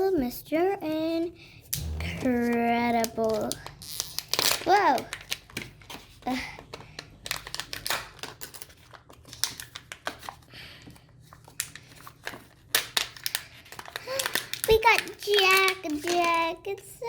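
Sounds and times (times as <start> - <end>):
plastic wrapping crinkling: 3.2 - 10.4, 11.4 - 16.4.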